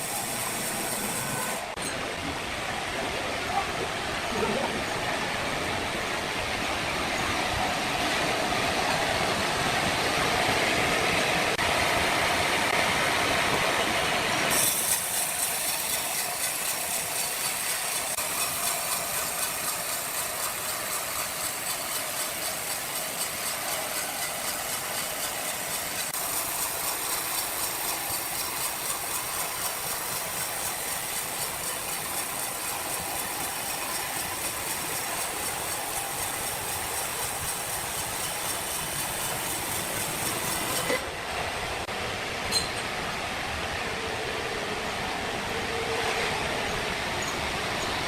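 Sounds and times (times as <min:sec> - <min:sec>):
sawmill machinery rattling: 0:00.0 - 0:02.2, 0:04.3 - 0:41.9.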